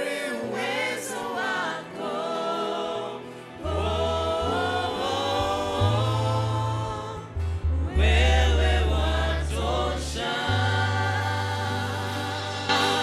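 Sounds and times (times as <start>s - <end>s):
singers performing gospel song: 0.0s - 13.0s
low bass notes: 3.6s - 13.0s.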